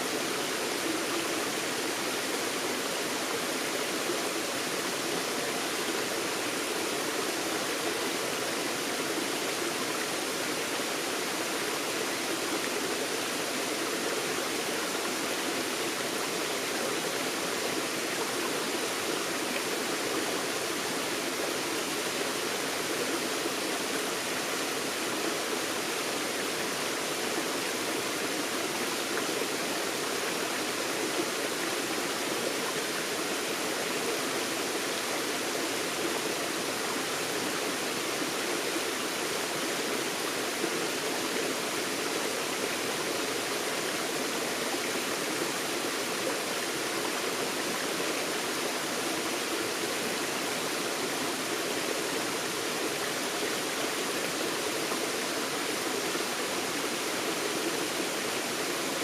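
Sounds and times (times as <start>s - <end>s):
stream running over rocks: 0.0s - 59.0s.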